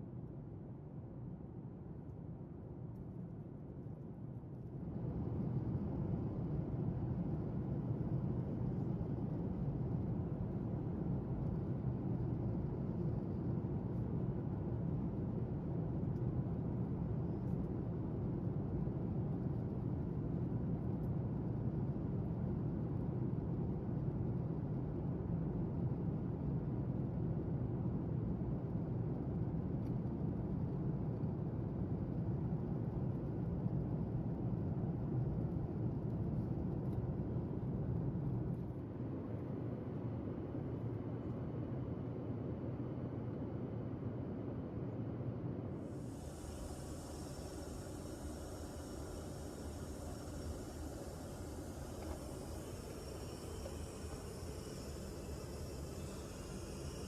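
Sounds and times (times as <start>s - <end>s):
airliner cabin noise: 45.8s - 57.0s.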